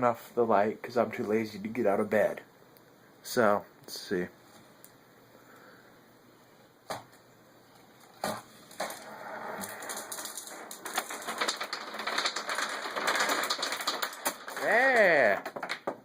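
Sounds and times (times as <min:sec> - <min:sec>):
small parts clattering down: 0:08.2 - 0:16.0.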